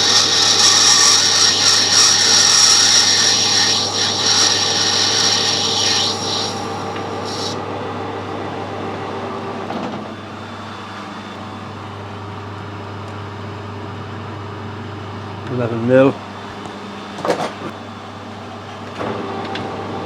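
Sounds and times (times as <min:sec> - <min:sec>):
lathe tool rasping in metal: 0:00.0 - 0:07.6
lathe running hum: 0:00.0 - 0:15.6, 0:17.8 - 0:20.0.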